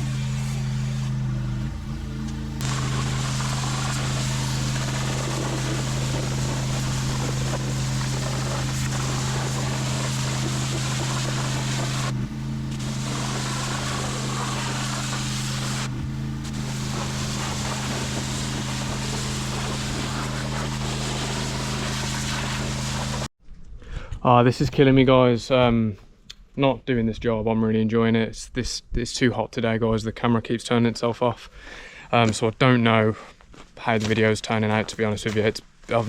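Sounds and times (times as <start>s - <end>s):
water jet hissing: 0.0s - 1.3s, 2.6s - 23.3s
pressure washer engine running: 0.0s - 23.3s.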